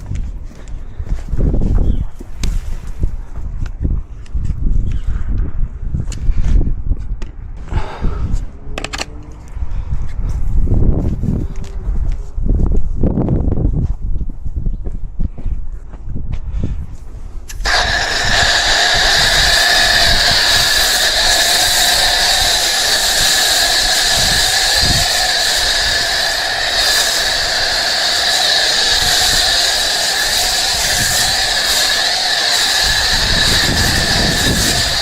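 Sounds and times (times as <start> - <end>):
faint whistle: 1.8 - 2.2
compressed air hissing: 17.5 - 35.0.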